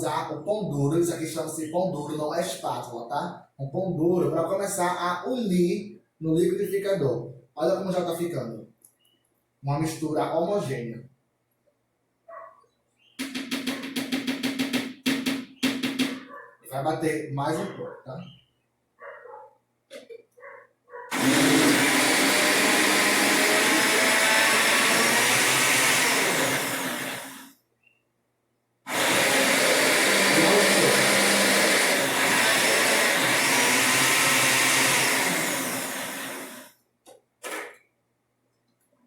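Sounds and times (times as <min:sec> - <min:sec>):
blender running: 0:21.1 - 0:27.5, 0:28.9 - 0:36.7.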